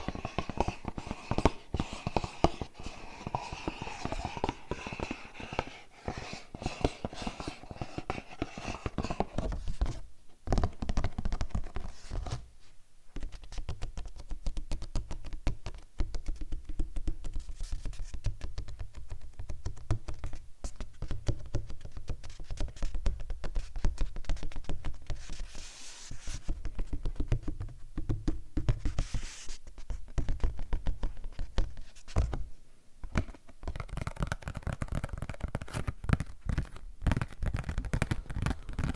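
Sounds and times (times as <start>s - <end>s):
tapping and scratching on objects: 0.0s - 11.8s, 33.1s - 38.9s.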